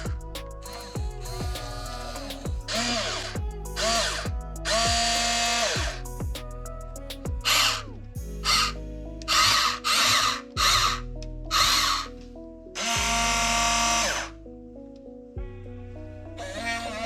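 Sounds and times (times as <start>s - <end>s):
background music: 0.0s - 17.0s.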